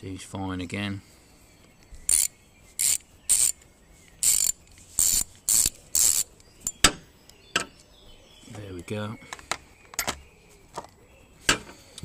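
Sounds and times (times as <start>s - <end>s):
ratchet clicking rapidly: 2.1s - 3.6s, 4.2s - 6.3s.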